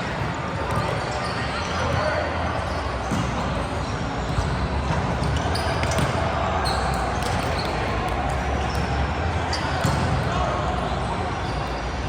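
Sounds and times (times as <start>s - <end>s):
players moving in a hall: 0.0s - 12.0s
ball bouncing: 9.8s - 10.2s.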